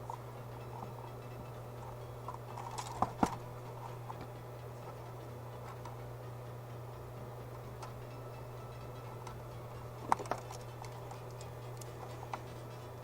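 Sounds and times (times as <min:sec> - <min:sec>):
hand tools and wire clicking: 0:00.0 - 0:06.0, 0:09.0 - 0:12.9
steady low hum: 0:00.0 - 0:13.0.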